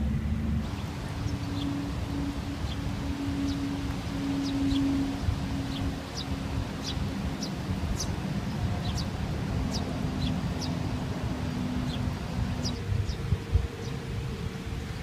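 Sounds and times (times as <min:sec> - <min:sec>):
low rumble: 0:00.0 - 0:15.0
bird chirping: 0:00.6 - 0:14.0.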